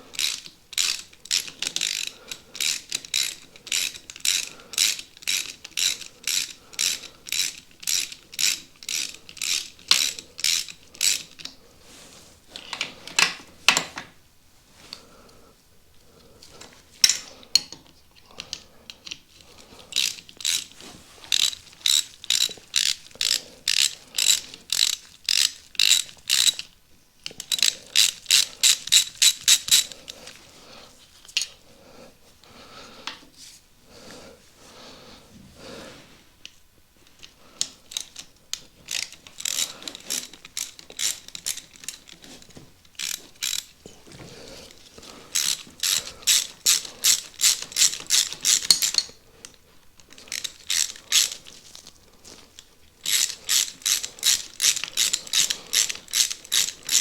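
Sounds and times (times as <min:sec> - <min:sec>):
socket ratchet clicking: 0:00.1 - 0:11.6, 0:21.3 - 0:26.7, 0:27.3 - 0:30.2, 0:37.6 - 0:43.8, 0:45.3 - 0:49.2, 0:50.1 - 0:51.8, 0:53.0 - 0:57.0.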